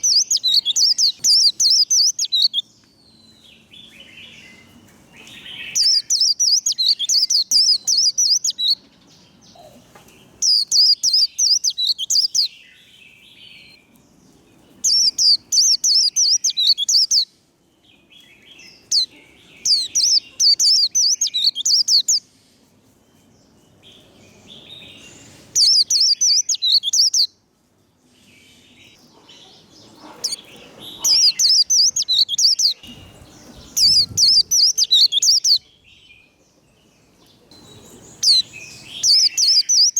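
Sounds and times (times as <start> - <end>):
soft bird chattering calls: 0.0 - 2.6, 5.4 - 8.8, 14.8 - 17.3, 18.8 - 22.3, 25.0 - 27.3, 28.8 - 35.6, 37.6 - 39.9
bird twittering song: 0.0 - 27.4, 28.0 - 39.9.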